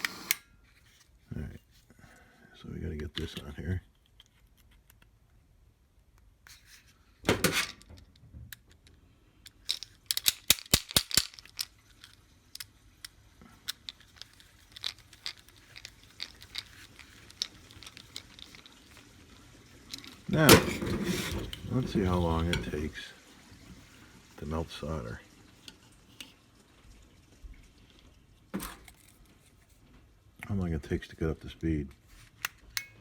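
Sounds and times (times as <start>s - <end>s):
small parts clicking and rattling: 3.2s - 5.2s, 6.5s - 22.9s, 28.6s - 29.7s
rustling: 13.5s - 24.4s.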